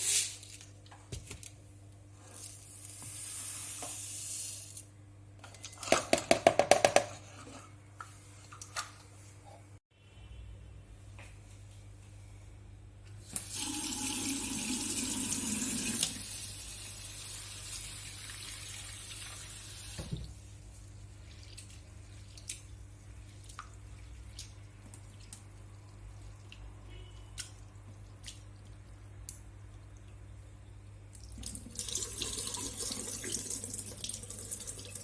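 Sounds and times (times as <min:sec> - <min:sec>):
kitchen tap running: 0:13.3 - 0:20.4, 0:31.2 - 0:35.0
water drips: 0:21.1 - 0:30.4.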